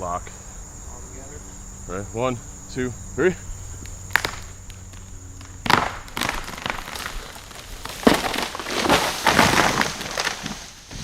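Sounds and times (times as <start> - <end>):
tree crashing down: 3.7 - 11.0
wood snapping: 3.8 - 11.0
limbs splintering and crashing: 4.1 - 11.0.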